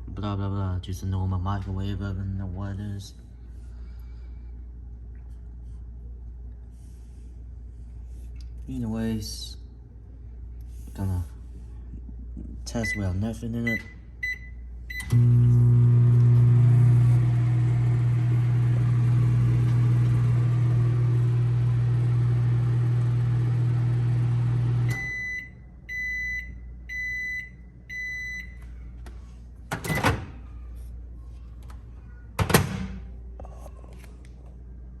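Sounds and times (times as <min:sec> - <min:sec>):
microwave oven humming: 0:12.4 - 0:33.4.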